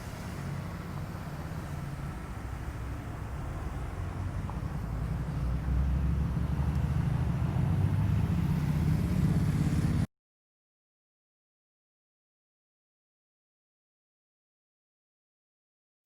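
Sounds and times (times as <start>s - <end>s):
motor vehicle rumble: 0.0s - 10.1s.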